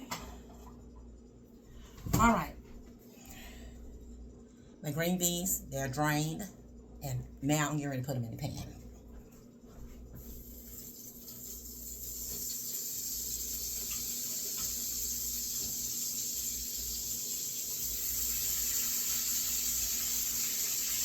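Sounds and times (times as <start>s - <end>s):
green beans sizzling in a frying pan: 10.4s - 21.0s.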